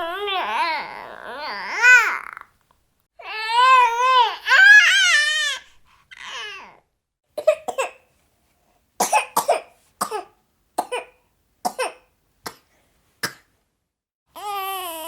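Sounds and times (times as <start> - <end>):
baby coughing: 7.4 - 8.0, 9.0 - 13.5.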